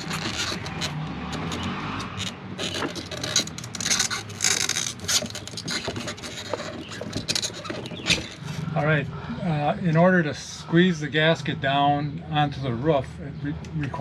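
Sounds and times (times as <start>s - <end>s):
small knocks: 0.0s - 8.6s
wires scraping against housing: 0.0s - 9.1s.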